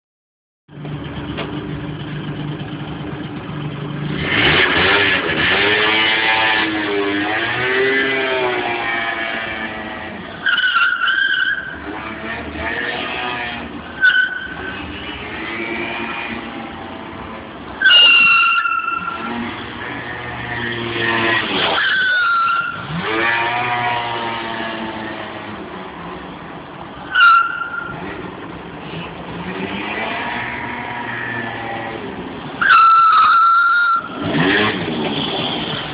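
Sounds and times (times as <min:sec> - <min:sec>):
scooter engine running: 0:00.7 - 0:05.4
scooter engine revving: 0:00.9 - 0:10.3, 0:19.1 - 0:25.5, 0:34.0 - 0:35.9
tyre squealing on tarmac: 0:04.3 - 0:16.8, 0:17.8 - 0:25.2, 0:27.0 - 0:35.9.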